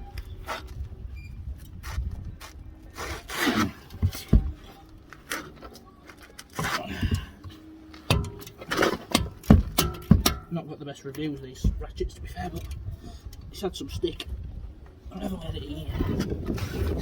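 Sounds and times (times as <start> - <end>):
tools scraping and clanking: 2.9 - 10.6, 15.9 - 17.0.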